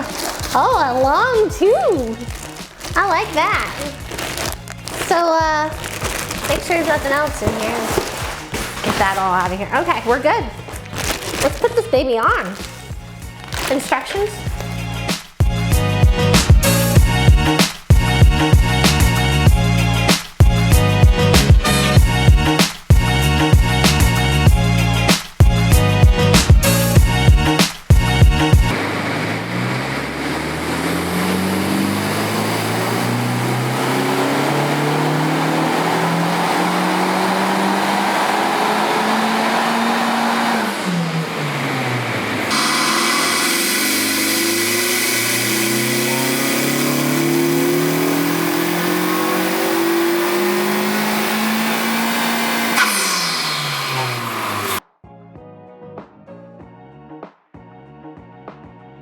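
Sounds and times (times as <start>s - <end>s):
car engine accelerating hard: 28.6s - 54.8s.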